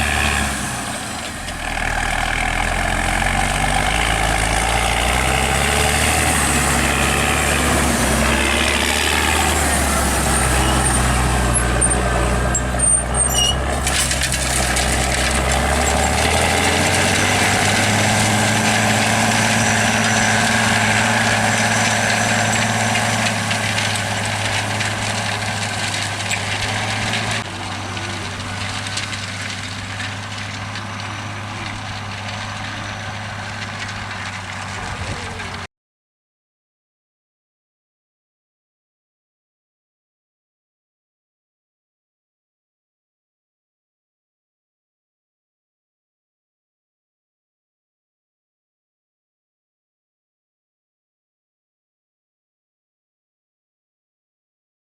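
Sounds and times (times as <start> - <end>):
tractor diesel engine under load: 0.0 - 35.7.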